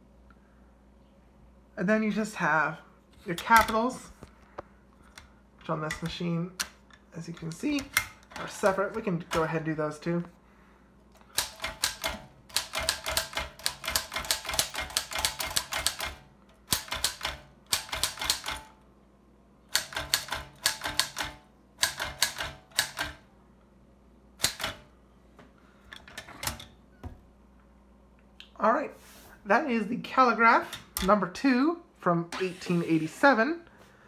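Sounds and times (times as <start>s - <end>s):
typewriter typing: 11.2s - 18.7s, 19.7s - 23.2s, 24.4s - 24.9s.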